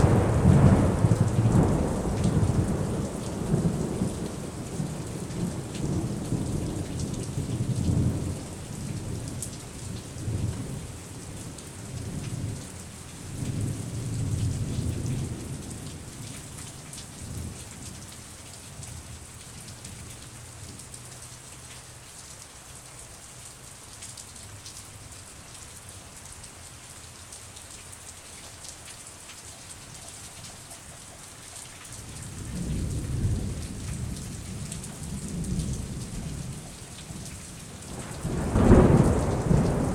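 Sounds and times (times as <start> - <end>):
rolling thunder rumbling: 0.0 - 9.2, 32.2 - 39.9
steady rain falling: 0.0 - 39.9.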